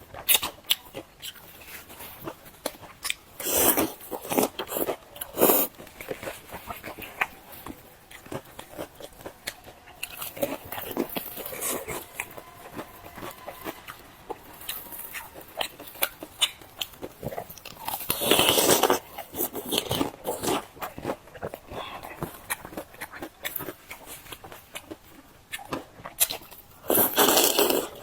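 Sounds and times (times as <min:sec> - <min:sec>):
chewing and crunching: 0:00.0 - 0:28.0.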